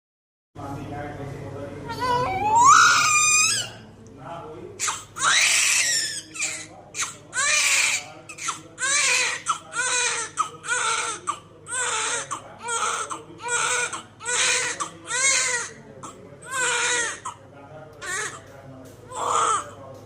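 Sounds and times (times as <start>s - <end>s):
infant crying: 1.9s - 3.8s, 4.8s - 17.4s, 18.0s - 18.4s, 19.1s - 19.8s.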